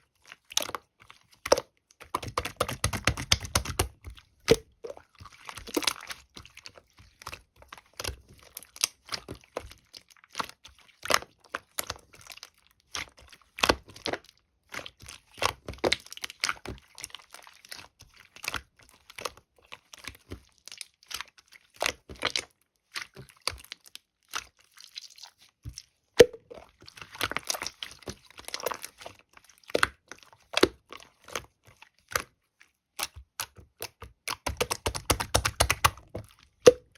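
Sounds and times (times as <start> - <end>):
slime squishing and popping: 1.4 - 6.2, 26.2 - 31.5, 33.0 - 36.9.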